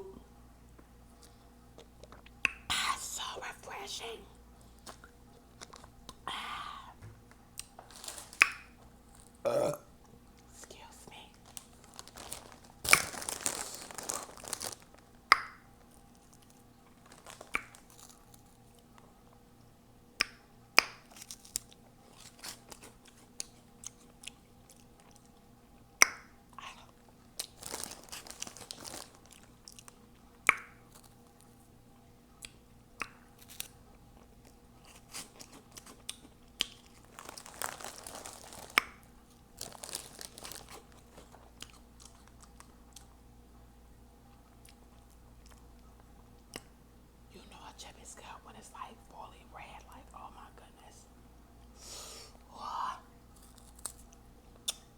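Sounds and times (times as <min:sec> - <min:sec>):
wet mouth smacks: 0:01.8 - 0:02.7, 0:08.4 - 0:08.7, 0:17.4 - 0:17.9, 0:32.4 - 0:33.7, 0:46.5 - 0:46.7, 0:54.6 - 0:54.9
crunchy chewing: 0:11.2 - 0:15.1, 0:15.8 - 0:19.0, 0:21.0 - 0:25.9, 0:26.6 - 0:31.6, 0:32.4 - 0:43.2, 0:53.3 - 0:54.9.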